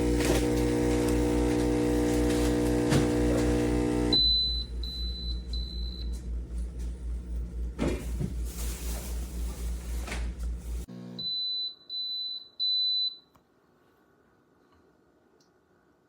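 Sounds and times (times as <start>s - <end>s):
espresso machine pump humming: 0.0s - 7.7s, 10.4s - 11.3s.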